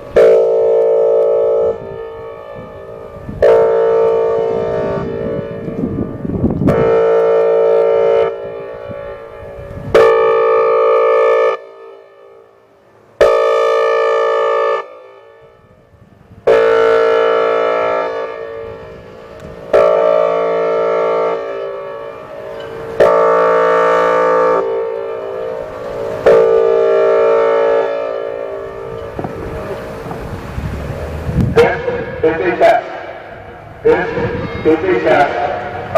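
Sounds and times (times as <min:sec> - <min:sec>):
warning siren horn blasts: 0:00.0 - 0:35.9.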